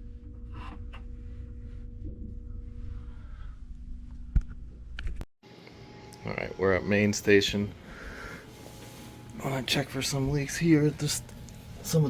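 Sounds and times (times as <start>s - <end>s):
low machinery hum: 0.0s - 12.0s.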